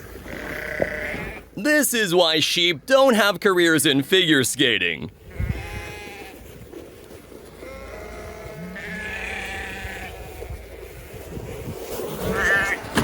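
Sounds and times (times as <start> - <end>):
sheep bleating: 0.3 - 1.5, 5.3 - 6.4, 7.6 - 10.3, 12.3 - 12.8.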